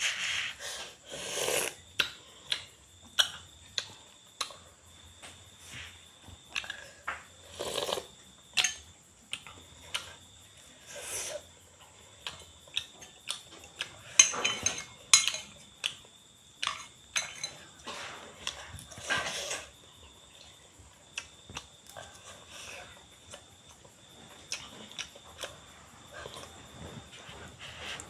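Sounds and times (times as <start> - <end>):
utensils and dishes clinking: 14.1 - 15.6, 16.6 - 19.4.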